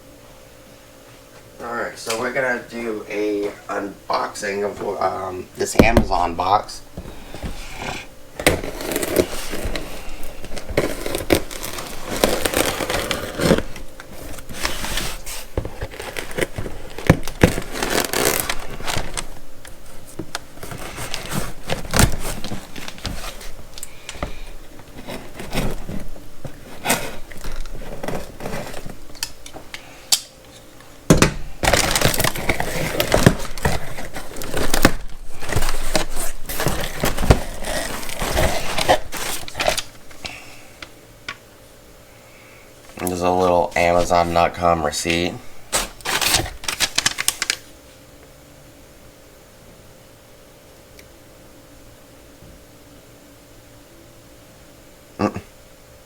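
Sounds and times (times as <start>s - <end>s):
cardboard tearing and crinkling: 4.9s - 29.5s, 31.5s - 40.3s, 45.7s - 47.7s.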